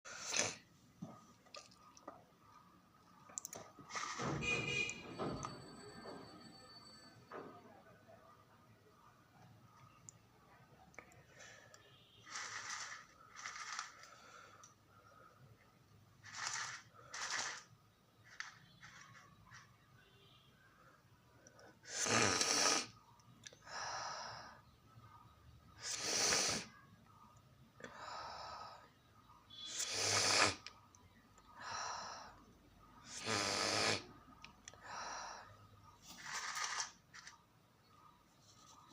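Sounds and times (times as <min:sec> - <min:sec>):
person sniffing through nose: 0:00.1 - 0:00.6, 0:21.9 - 0:22.9, 0:25.8 - 0:26.7, 0:29.6 - 0:30.7, 0:33.1 - 0:34.1.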